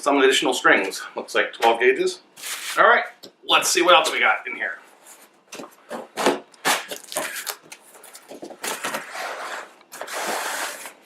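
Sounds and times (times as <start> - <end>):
cardboard scraping and crumpling: 6.7 - 11.0.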